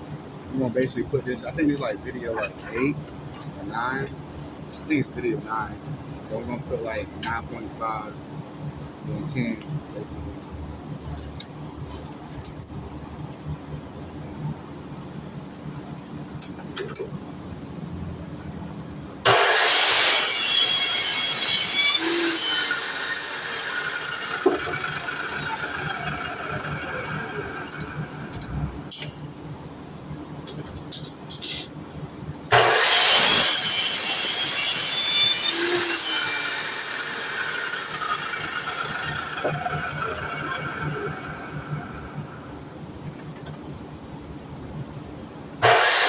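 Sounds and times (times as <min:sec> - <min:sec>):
miter saw whine running down: 0:19.3 - 0:28.9, 0:32.5 - 0:42.6, 0:45.6 - 0:46.0.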